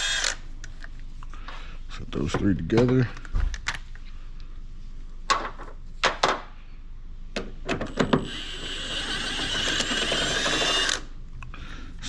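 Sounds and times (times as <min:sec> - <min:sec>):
steady whir: 0:08.0 - 0:11.1.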